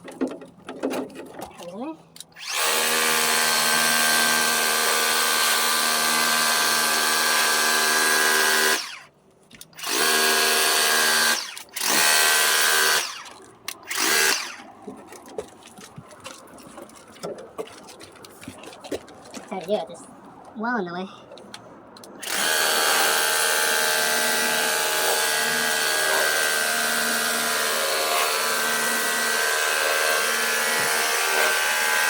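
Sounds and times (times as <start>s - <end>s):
electric pump motor whining: 2.4s - 9.0s, 9.8s - 14.7s, 22.2s - 32.0s.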